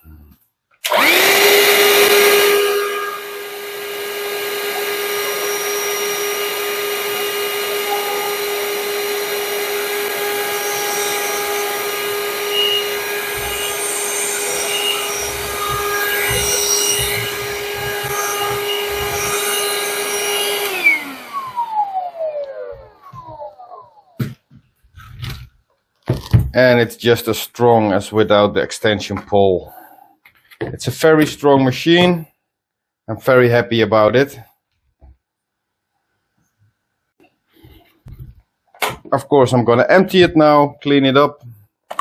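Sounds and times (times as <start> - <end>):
handheld vacuum cleaner running: 0.8 - 24.2
vacuum motor winding down: 0.8 - 24.2.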